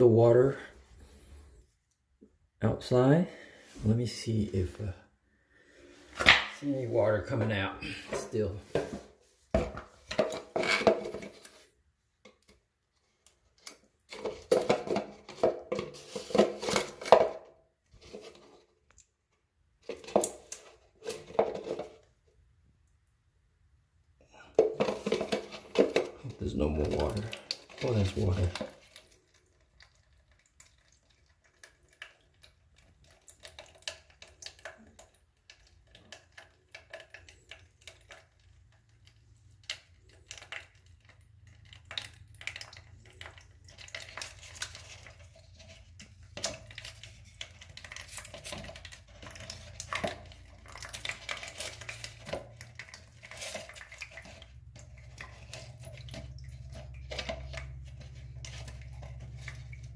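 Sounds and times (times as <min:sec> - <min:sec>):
low steady hum: 0:48.7 - 0:59.9.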